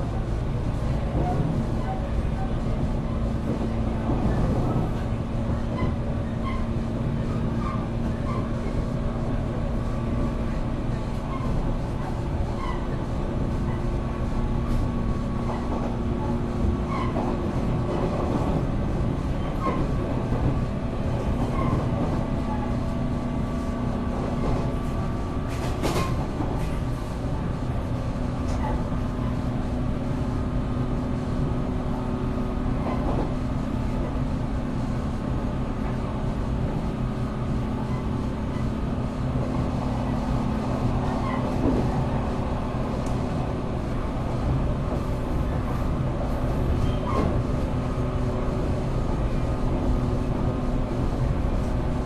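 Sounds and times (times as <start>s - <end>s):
train motor hum: 0.0s - 52.0s
wheels rumbling on rail: 0.0s - 52.0s.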